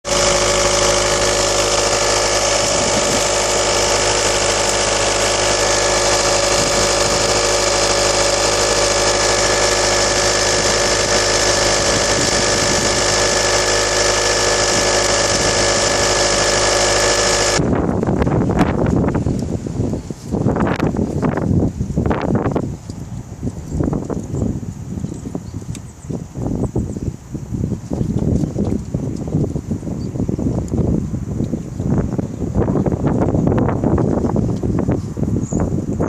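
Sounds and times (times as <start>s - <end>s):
diesel engine whining: 0.0s - 19.7s
low engine rumble: 0.0s - 26.8s.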